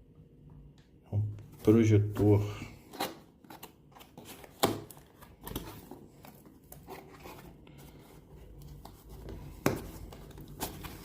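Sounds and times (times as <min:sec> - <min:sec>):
packaging rustling: 0:02.9 - 0:11.0.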